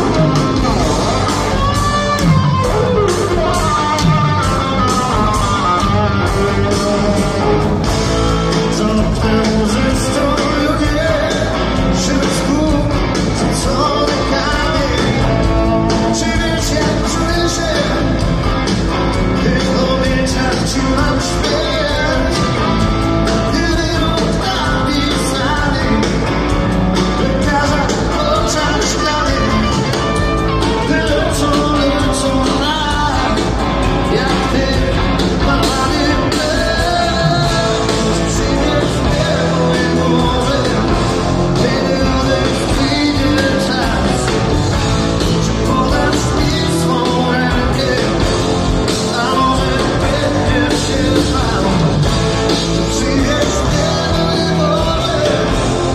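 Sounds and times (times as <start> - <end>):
rock band playing: 0.0 - 55.9
person singing: 27.0 - 55.9.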